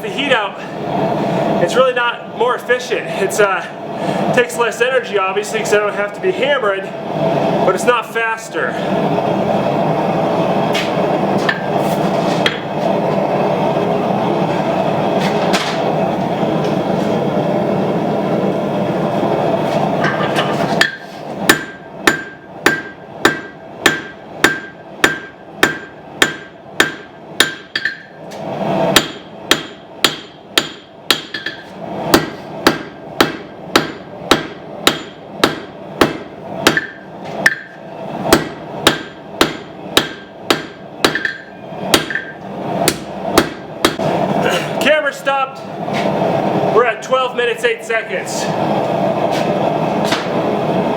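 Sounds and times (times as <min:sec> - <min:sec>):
hammer ringing on anvil: 0:20.8 - 0:28.1, 0:38.4 - 0:42.4.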